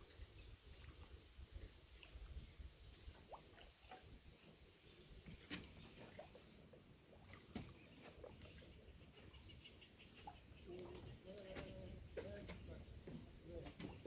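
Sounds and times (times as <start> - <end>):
faint chirps: 4.7 - 14.0.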